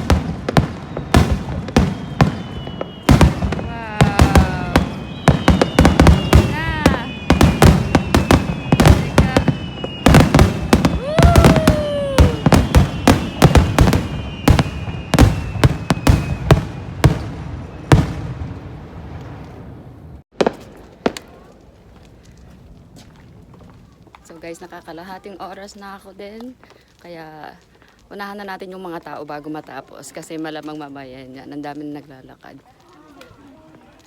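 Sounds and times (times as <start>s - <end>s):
fireworks whistling: 0.0s - 19.8s
fireworks bangs: 0.0s - 24.5s.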